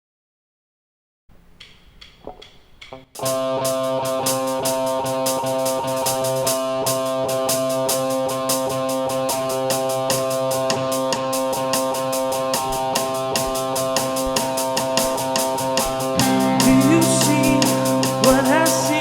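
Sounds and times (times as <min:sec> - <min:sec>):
quiet notes and taps: 0:01.3 - 0:03.2, 0:12.2 - 0:18.6
band playing guitar and drums: 0:03.2 - 0:19.0.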